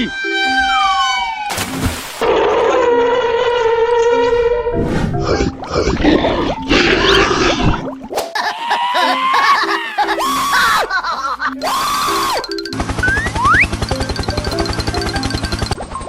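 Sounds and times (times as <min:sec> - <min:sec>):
wailing cries: 0:08.4 - 0:12.5
light music with repeated notes: 0:09.4 - 0:16.0.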